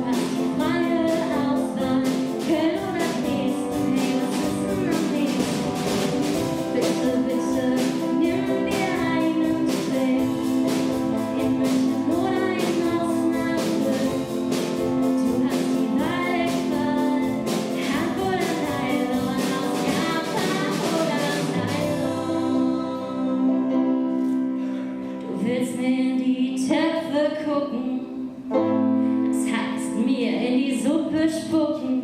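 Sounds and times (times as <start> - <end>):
song with steady beat: 0.0 - 23.4
person singing: 0.0 - 28.4.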